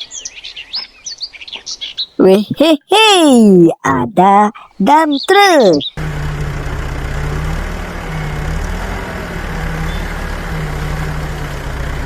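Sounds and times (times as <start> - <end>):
heavy truck engine idling: 6.0 - 12.0.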